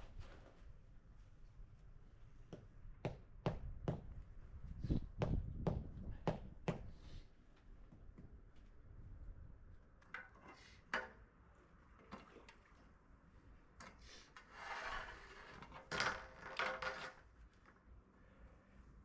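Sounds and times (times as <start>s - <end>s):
scraping and rubbing: 14.4s - 17.3s.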